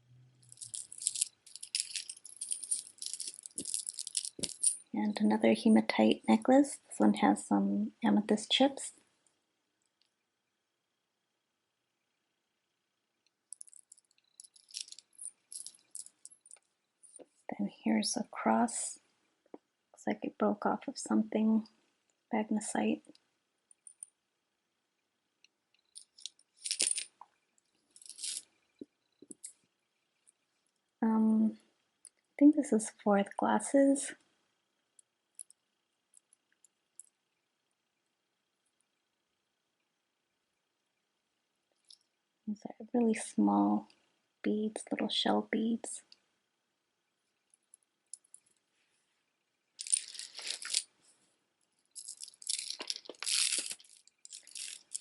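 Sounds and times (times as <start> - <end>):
stone beads clicking: 0.4 - 4.9, 13.5 - 17.2, 25.8 - 27.2, 28.0 - 28.5, 49.8 - 50.9, 51.9 - 55.0
beads clattering rattle: 0.4 - 5.0, 13.5 - 17.2, 25.9 - 27.2, 28.0 - 28.5, 49.8 - 50.9, 51.9 - 55.0.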